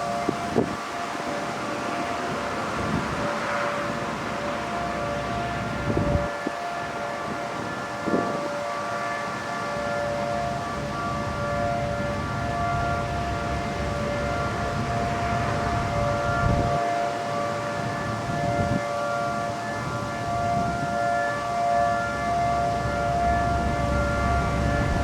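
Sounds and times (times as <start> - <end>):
outdoor warning siren steady tone: 0.0 - 25.0.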